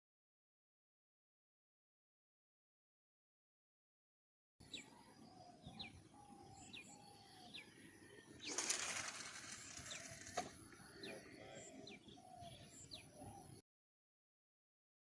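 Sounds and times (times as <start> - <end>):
birds chirping: 4.6 - 13.6
rustling noise: 8.4 - 10.6.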